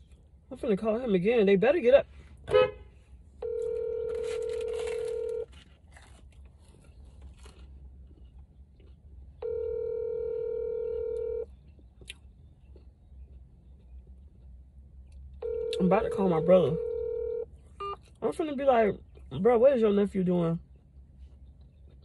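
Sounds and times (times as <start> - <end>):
telephone ringback tone: 3.4 - 5.5, 9.4 - 11.5, 15.4 - 17.5.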